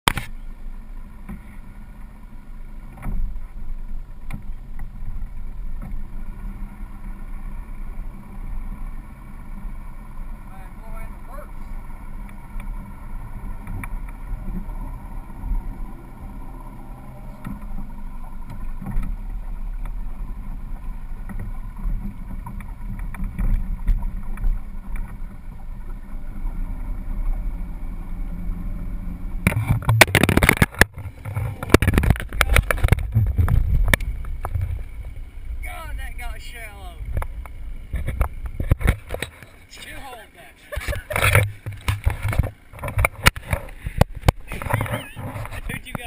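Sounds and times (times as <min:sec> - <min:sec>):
boat motor humming: 0:00.1 - 0:46.0
knocking and splashing: 0:29.4 - 0:34.9, 0:40.8 - 0:46.0.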